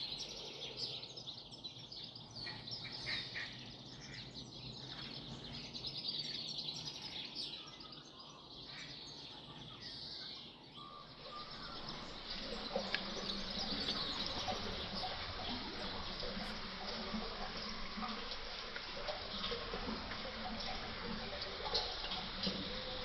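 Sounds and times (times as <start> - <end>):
small birds chirping: 0.0 - 16.8.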